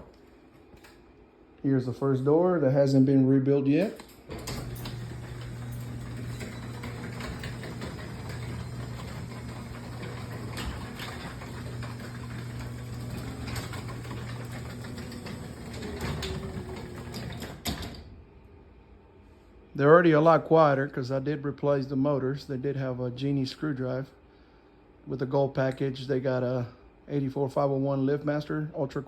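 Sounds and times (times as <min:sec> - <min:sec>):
garage door opener motor hum: 0:04.2 - 0:18.2
garage door rollers clanking: 0:04.3 - 0:18.2.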